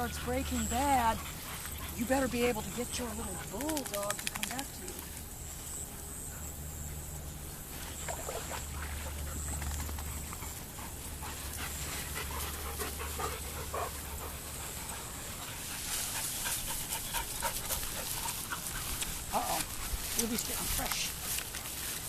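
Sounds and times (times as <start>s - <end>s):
dogs panting: 0.0s - 7.8s, 8.4s - 22.0s.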